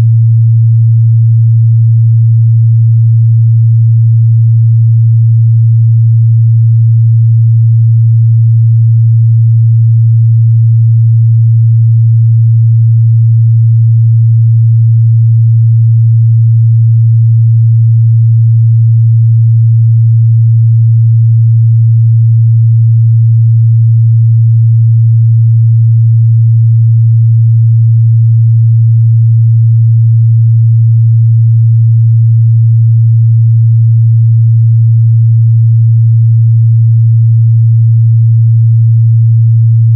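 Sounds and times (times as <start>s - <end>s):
low sine wave test tone: 0.0s - 39.9s.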